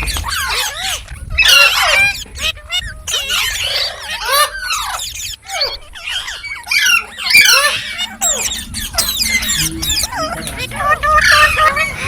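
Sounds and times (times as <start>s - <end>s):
parrot chirping: 0.0s - 12.0s.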